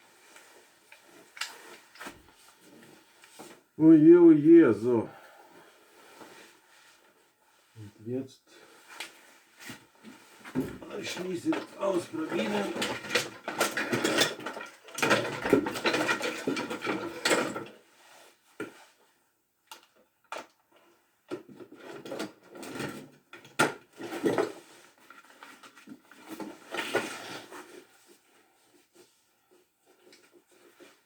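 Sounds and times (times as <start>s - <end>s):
power tool handling knocks and rattles: 10.6s - 17.7s.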